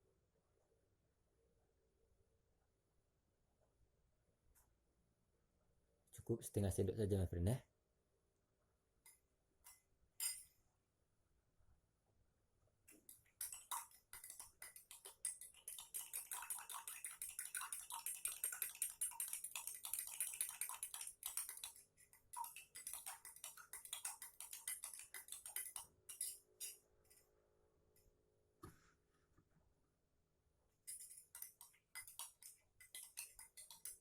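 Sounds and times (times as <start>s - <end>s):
spoon clinking in a glass: 9.1s - 10.6s, 13.4s - 21.8s, 22.4s - 27.2s, 30.9s - 34.0s.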